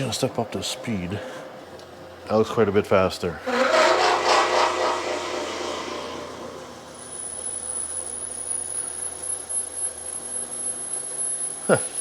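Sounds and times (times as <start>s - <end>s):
milling machine high-pitched whine: 3.5s - 12.0s.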